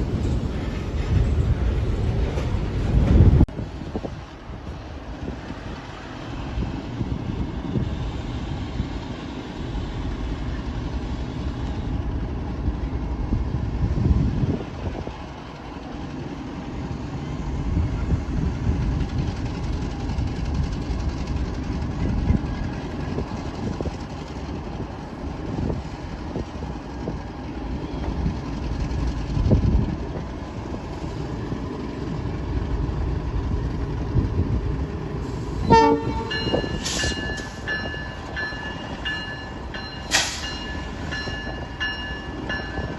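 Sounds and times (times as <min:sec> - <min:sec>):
freight train rumbling past: 0:00.0 - 0:42.9
train wheel clatter: 0:35.2 - 0:42.9
train horn: 0:35.6 - 0:36.6
train thuds: 0:35.6 - 0:42.0.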